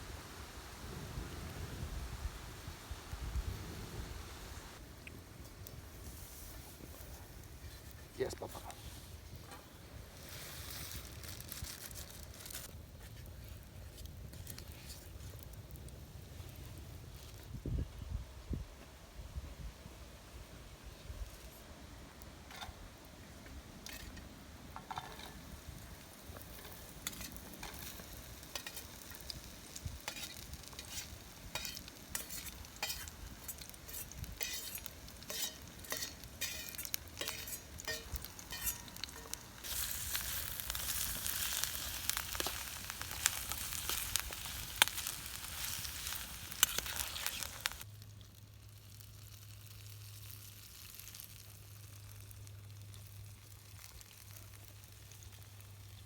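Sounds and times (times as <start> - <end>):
food sizzling in a pan: 23.8 - 47.9, 48.6 - 56.0.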